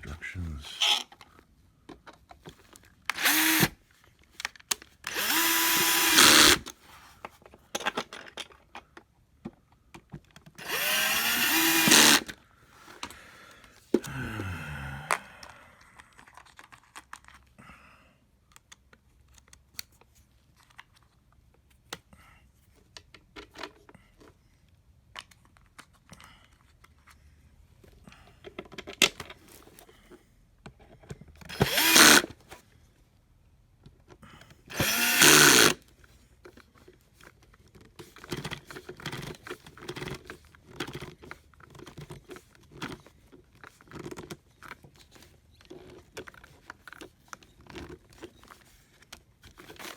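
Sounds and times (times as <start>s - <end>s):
cordless drill driving screws: 3.1s - 3.8s, 5.1s - 6.7s, 10.6s - 12.4s, 31.5s - 32.4s, 34.7s - 35.8s.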